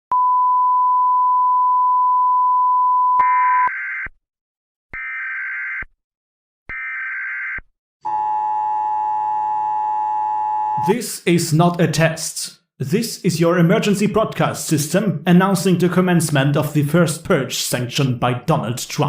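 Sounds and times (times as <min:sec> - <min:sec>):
two-tone alert signal: 0:02.8 - 0:03.8.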